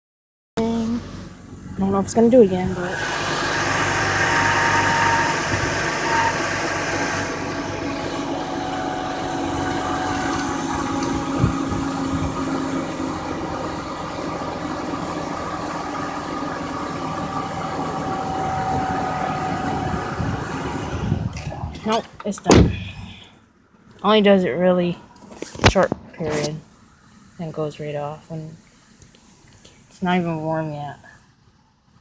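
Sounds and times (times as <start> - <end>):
car engine idling: 0.6 - 23.2.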